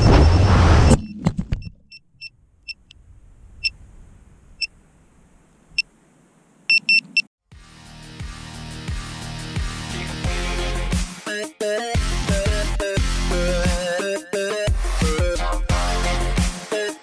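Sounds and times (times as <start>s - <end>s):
background music with a beat: 7.5s - 17.0s.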